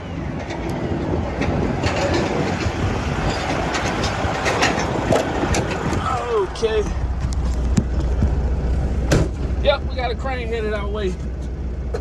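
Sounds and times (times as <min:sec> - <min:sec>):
crane rumbling on wheels: 0:00.0 - 0:12.0
clanks and clicks: 0:00.3 - 0:08.5.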